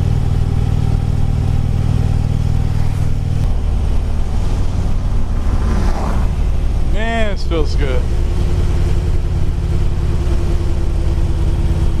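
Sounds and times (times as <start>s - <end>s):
motorcycle engine running: 0.0s - 12.0s
wind rush: 3.0s - 8.2s.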